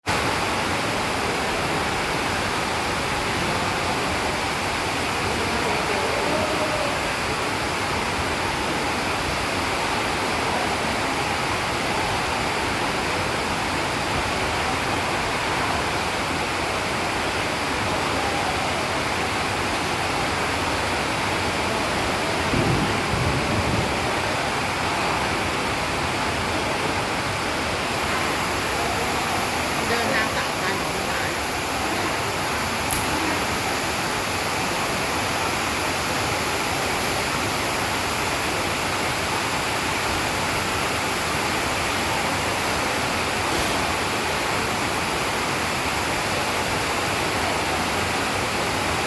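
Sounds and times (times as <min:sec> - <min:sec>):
heavy rain downpour: 0:00.0 - 0:49.0
low thunder rumble: 0:22.3 - 0:24.6.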